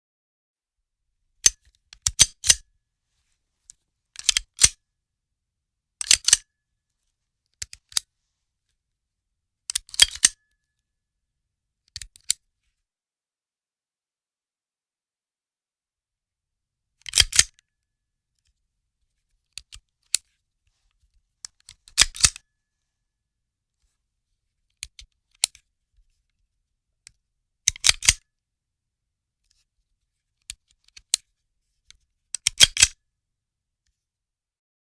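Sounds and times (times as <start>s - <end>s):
gun mechanism clicks and clacks: 1.5s - 2.6s, 4.2s - 4.8s, 6.0s - 6.4s, 9.7s - 10.4s, 17.0s - 17.5s, 21.6s - 22.4s, 27.7s - 28.2s, 32.4s - 33.0s.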